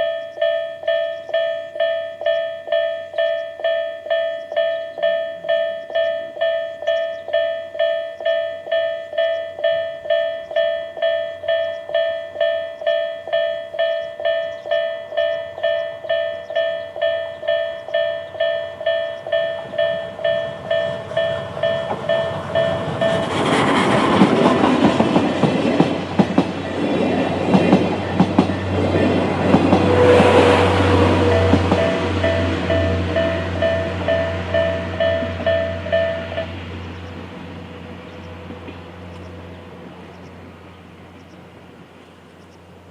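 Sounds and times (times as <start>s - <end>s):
level crossing warning bell: 0.0s - 41.2s
steam train rolling and clattering: 17.6s - 41.6s.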